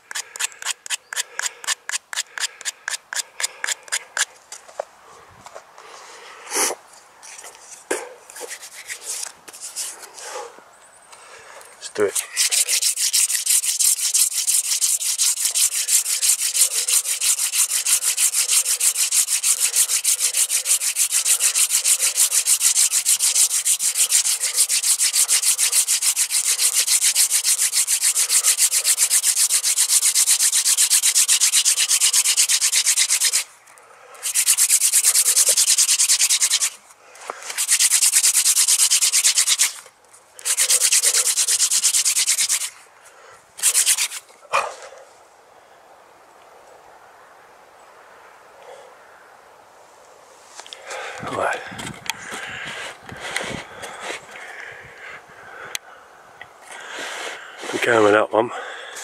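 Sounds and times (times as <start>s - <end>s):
wood grinding on wood: 0.0s - 4.8s, 7.2s - 10.5s, 11.9s - 33.5s, 34.2s - 42.8s, 43.6s - 44.7s.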